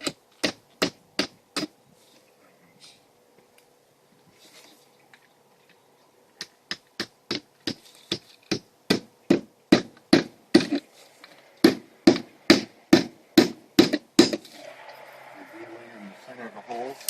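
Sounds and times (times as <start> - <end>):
hammer striking nails: 0.0 - 1.7, 6.4 - 10.9, 11.6 - 14.6.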